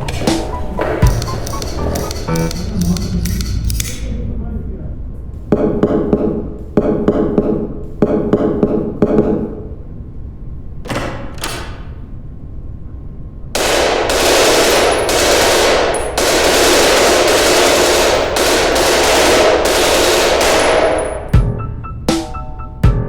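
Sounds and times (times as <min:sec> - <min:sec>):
sharp hits: 0:00.0 - 0:09.3, 0:13.6 - 0:23.0
rapid automatic gunfire: 0:13.6 - 0:21.3.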